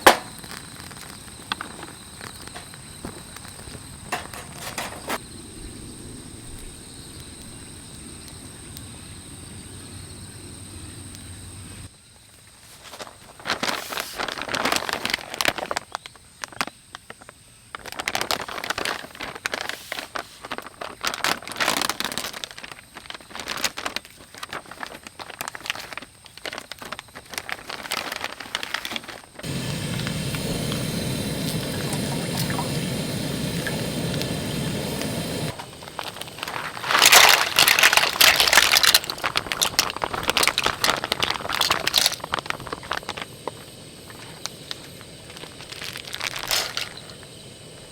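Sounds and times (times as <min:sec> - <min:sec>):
scrapes clicks and crackles: 0:00.0 - 0:05.2, 0:12.7 - 0:47.3
liquid pouring: 0:29.4 - 0:35.6.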